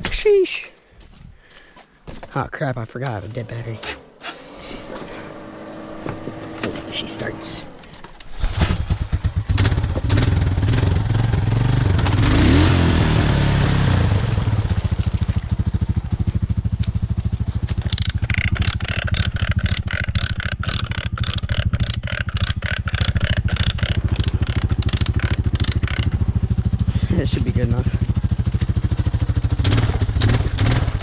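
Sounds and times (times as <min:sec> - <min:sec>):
atv engine revving and idling: 0:04.6 - 0:08.0, 0:08.6 - 0:31.0
regular clicking: 0:17.7 - 0:26.2.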